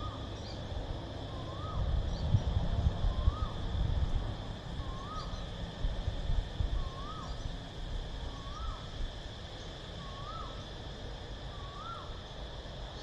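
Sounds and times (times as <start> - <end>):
bird whistled call: 0.0 - 0.6, 1.3 - 2.2, 3.1 - 3.6, 4.8 - 5.5, 6.8 - 7.5, 8.3 - 8.9, 10.0 - 10.6, 11.5 - 12.2
wind rumbling on microphone: 0.0 - 9.3
cicadas droning: 0.0 - 13.0.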